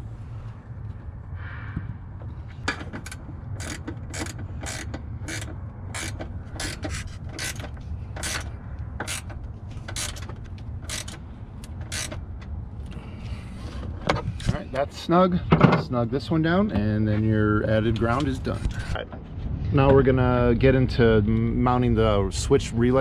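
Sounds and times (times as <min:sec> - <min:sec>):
low steady hum: 0:00.0 - 0:23.0
ratchet wrench clicking: 0:02.7 - 0:12.2.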